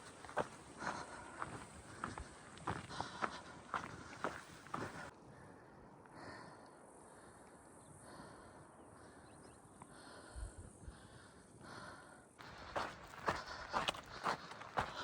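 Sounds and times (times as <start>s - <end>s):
footstep: 12.4s - 15.0s.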